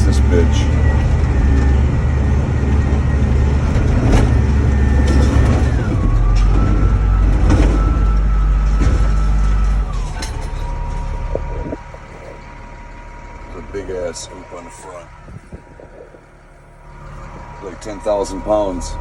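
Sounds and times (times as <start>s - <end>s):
diesel engine running hard: 0.0s - 19.0s
sharp knocks and clanks: 3.6s - 12.4s.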